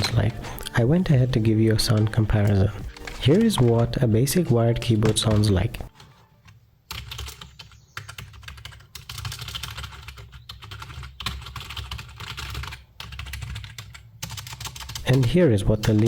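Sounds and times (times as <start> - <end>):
fast keyboard typing: 0.0 - 16.0.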